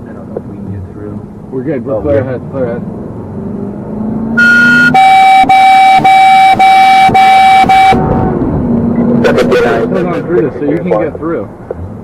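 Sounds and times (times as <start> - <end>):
engine note rising: 2.5 - 10.6
vehicle horn blasts: 4.4 - 8.1.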